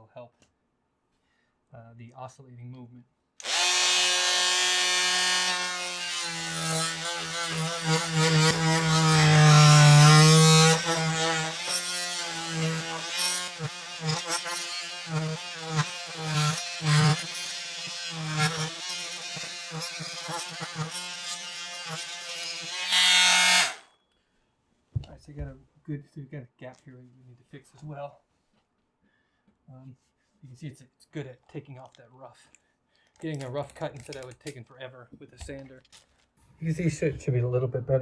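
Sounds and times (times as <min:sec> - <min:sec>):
oscillating tool cutting wood: 0:03.4 - 0:23.8.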